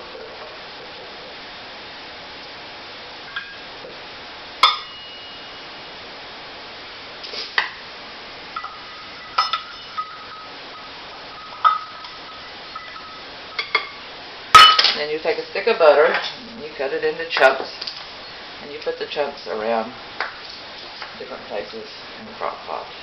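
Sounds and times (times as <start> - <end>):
dishes and utensils clinking: 4.6 - 5.5, 8.6 - 15.0.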